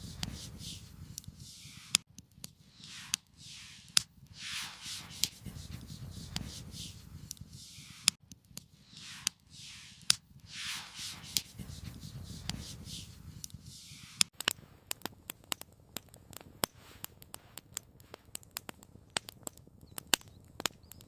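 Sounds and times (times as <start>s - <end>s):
swishing rubbing noises: 0.0s - 2.0s, 2.7s - 8.2s, 8.8s - 14.3s
campfire wood crackling: 0.0s - 21.0s.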